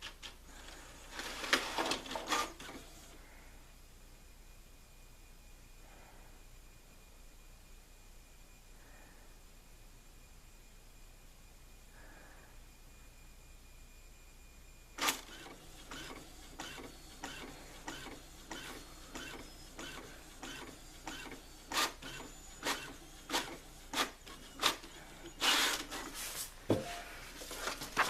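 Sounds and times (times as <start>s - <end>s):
printer mechanical rush: 0.5s - 3.2s, 15.0s - 28.0s.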